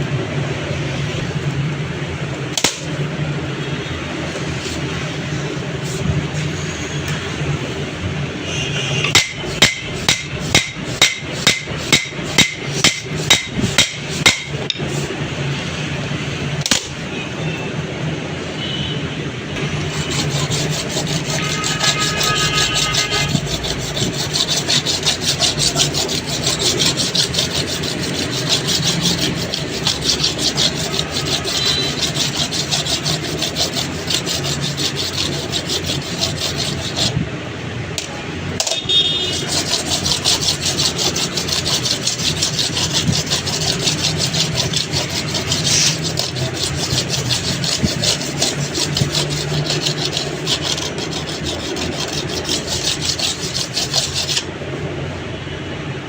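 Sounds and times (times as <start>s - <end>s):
rapid scraping on metal: 4.3s - 6.2s, 9.1s - 15.2s, 19.6s - 37.2s, 39.2s - 54.5s.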